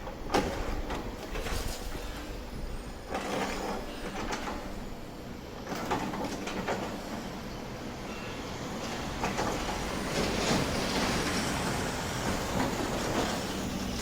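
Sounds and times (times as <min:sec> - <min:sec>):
trackside clanks and knocks: 0:00.0 - 0:02.4, 0:03.0 - 0:05.0, 0:05.6 - 0:07.5, 0:08.1 - 0:14.0
train passing: 0:06.6 - 0:14.0.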